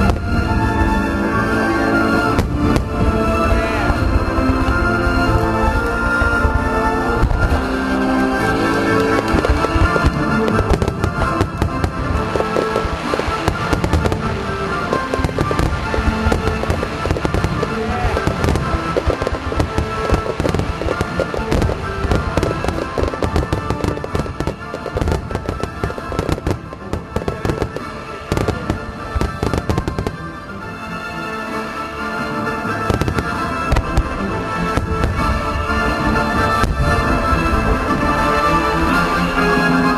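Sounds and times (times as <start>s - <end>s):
fireworks bursting: 0.0s - 39.9s
music playing: 0.0s - 39.9s.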